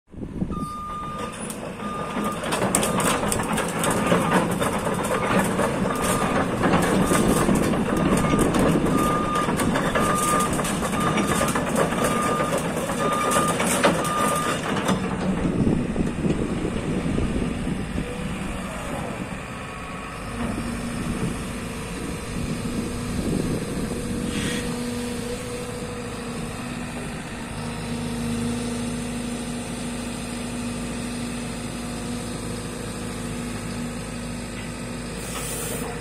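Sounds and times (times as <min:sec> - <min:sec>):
diesel engine running: 0:00.2 - 0:36.0
excavator alarm beeping: 0:00.5 - 0:14.6
tracks clanking: 0:01.2 - 0:19.4.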